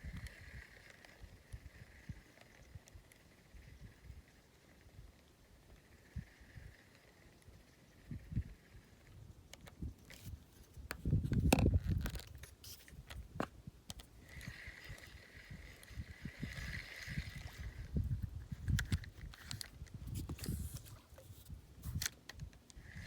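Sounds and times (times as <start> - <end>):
faint steady whir: 0.0 - 23.0.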